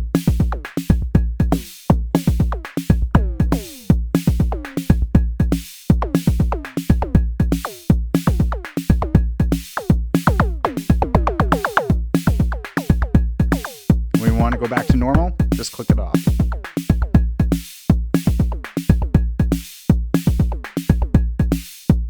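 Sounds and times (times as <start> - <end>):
drum machine beat: 0.0 - 22.0
pitch-swept electronic drum hits: 9.8 - 15.6.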